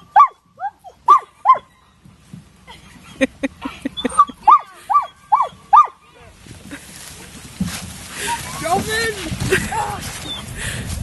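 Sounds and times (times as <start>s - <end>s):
dog yapping: 0.0s - 1.8s, 4.0s - 6.0s.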